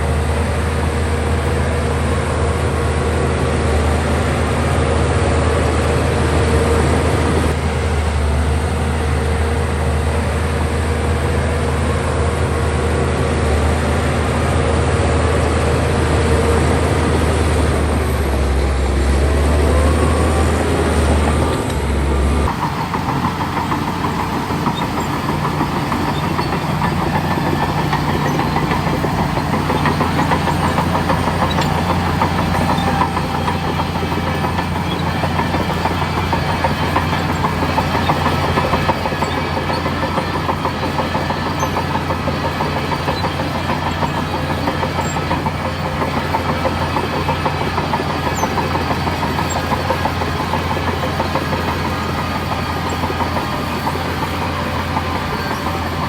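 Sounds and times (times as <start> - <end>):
bulldozer diesel engine running: 0.0 - 56.0
fast even rattle: 21.0 - 56.0.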